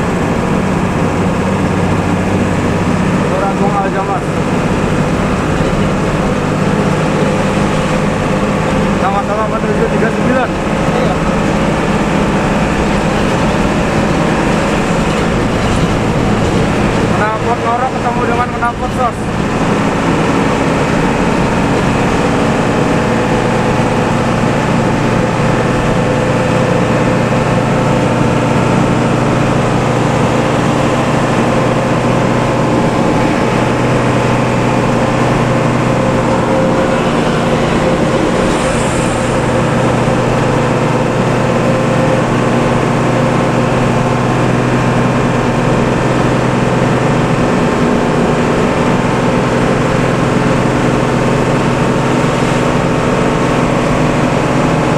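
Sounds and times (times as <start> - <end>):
bus engine and exhaust droning: 0.0 - 54.9.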